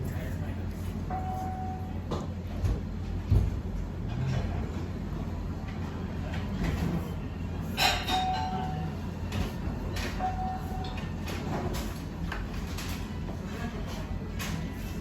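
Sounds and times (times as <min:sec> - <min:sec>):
dishes clattering: 0:07.8 - 0:08.8.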